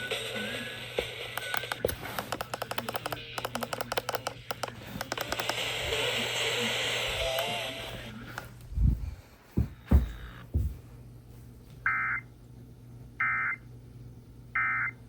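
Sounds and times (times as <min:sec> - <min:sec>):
radio static hiss: 0:00.0 - 0:08.6
crackling clicks: 0:01.3 - 0:05.7.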